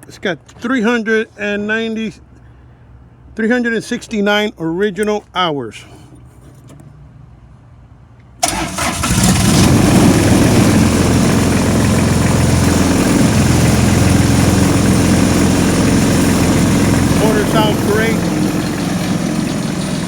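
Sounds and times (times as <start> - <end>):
diesel engine starting and running: 8.4 - 20.0.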